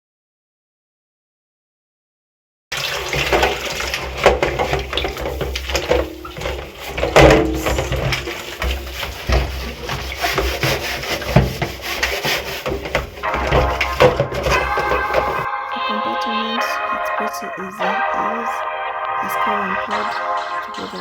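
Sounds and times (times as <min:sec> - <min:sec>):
scouring pad scrubbing: 0:02.7 - 0:15.5
water sounds: 0:02.7 - 0:21.0
knocks: 0:03.3 - 0:15.5.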